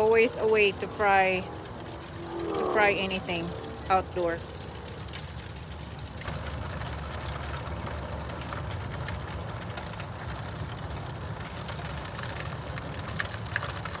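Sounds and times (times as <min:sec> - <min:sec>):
low rumble: 0:00.0 - 0:05.7
fish sizzling in hot oil: 0:00.0 - 0:14.0.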